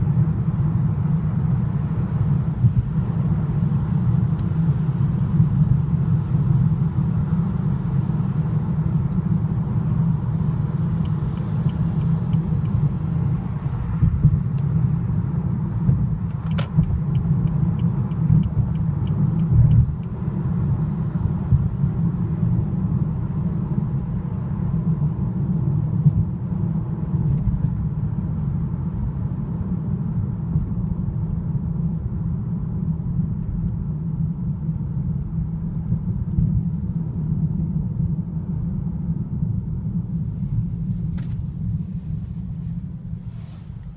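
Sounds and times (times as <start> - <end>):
car interior rumble: 0.0 - 43.9.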